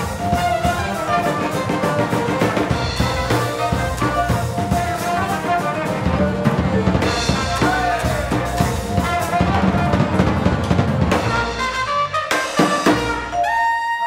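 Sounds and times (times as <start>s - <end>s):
alto saxophone: 0.0s - 14.0s
busy drum kit: 0.0s - 14.0s
double bass: 0.0s - 14.0s
trombone: 0.0s - 14.0s
trumpet: 0.0s - 14.0s
vibraphone: 12.9s - 14.0s.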